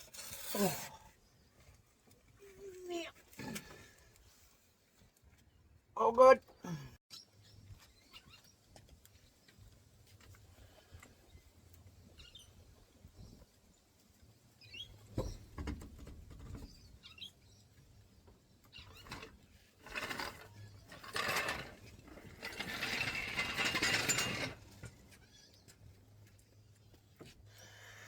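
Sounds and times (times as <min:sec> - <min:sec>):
car jack clanking and ratcheting: 0:19.9 - 0:24.8.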